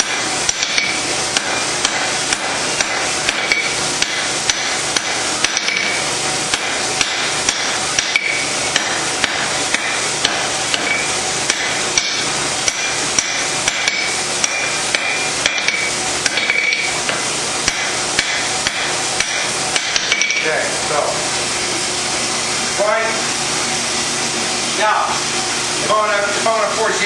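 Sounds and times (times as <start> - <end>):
hammer striking steel on anvil: 0.0 - 16.9, 17.7 - 20.4.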